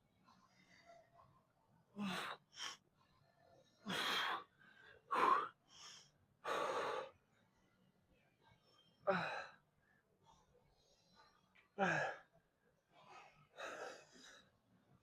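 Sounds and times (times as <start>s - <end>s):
man breathing heavily: 3.8s - 7.2s, 9.0s - 9.6s, 12.9s - 14.6s.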